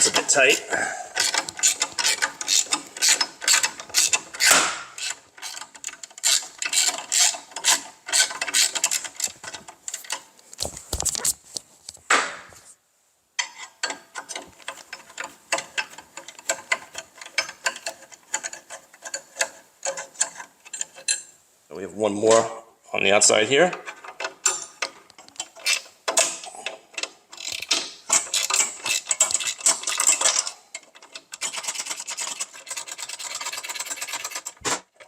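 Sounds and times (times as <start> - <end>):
ratchet clicking: 1.2 - 9.2, 27.0 - 34.5.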